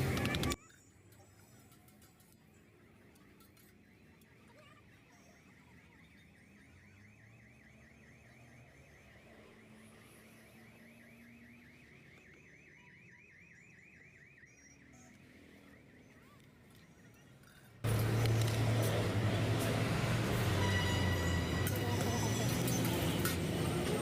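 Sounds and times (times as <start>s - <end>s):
faint electronic alarm warbling: 2.9s - 17.8s.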